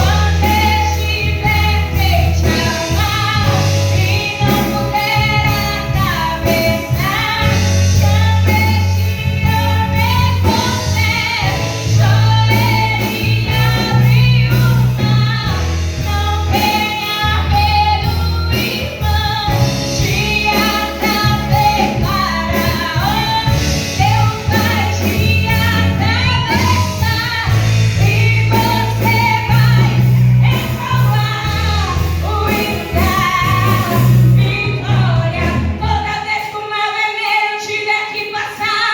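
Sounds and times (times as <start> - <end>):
instrumental accompaniment with beat: 0.0 - 38.2
woman singing gospel song: 0.0 - 38.9.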